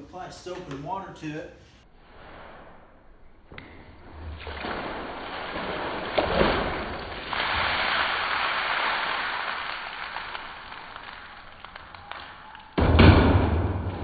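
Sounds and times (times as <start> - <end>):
water splashing over a car: 4.0 - 12.8.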